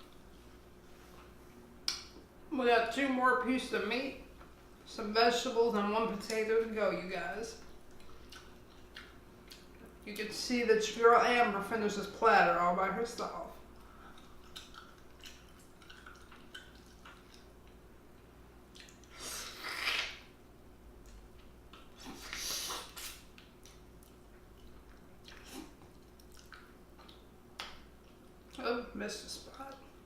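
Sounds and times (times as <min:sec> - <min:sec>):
wet slurping sucks: 0:19.0 - 0:20.2.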